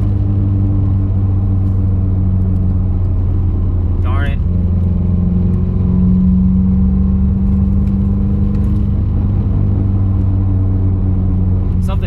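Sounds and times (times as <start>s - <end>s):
car engine droning: 0.0s - 12.0s
man talking: 4.0s - 4.4s.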